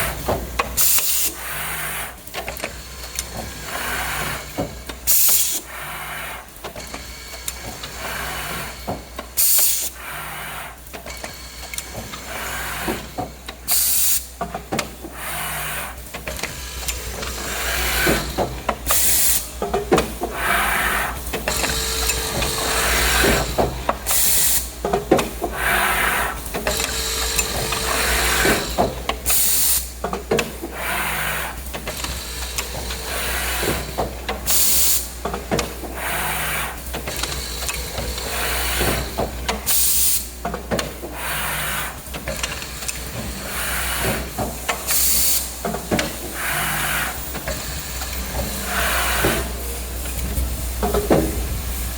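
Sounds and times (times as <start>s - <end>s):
drilling machine humming: 15.0s - 30.0s, 41.2s - 51.9s.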